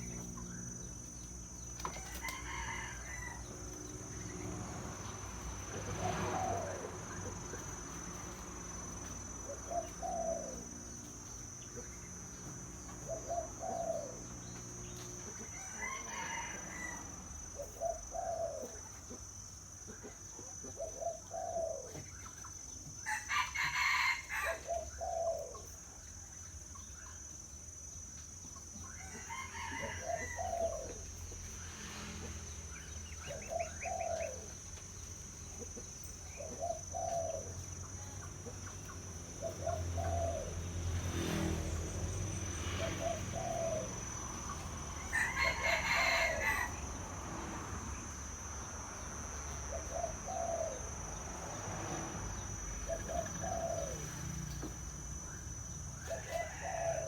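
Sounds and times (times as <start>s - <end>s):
dove cooing: 4.2s - 8.4s, 9.2s - 11.0s, 11.8s - 19.2s, 20.0s - 22.3s, 23.3s - 25.8s, 29.0s - 31.3s, 33.0s - 34.7s, 35.5s - 40.7s, 42.4s - 46.8s, 49.6s - 51.2s, 52.3s - 54.6s, 56.0s - 57.0s.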